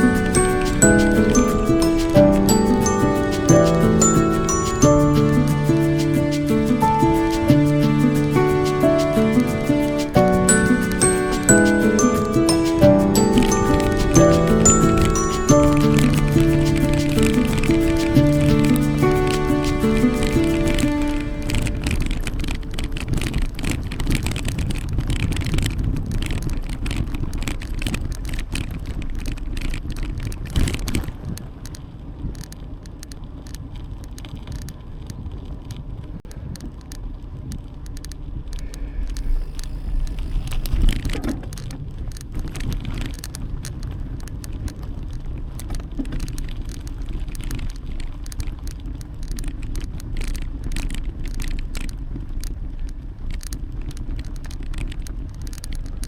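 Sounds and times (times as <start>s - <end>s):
wind and tyres rumbling: 20.6s - 56.0s.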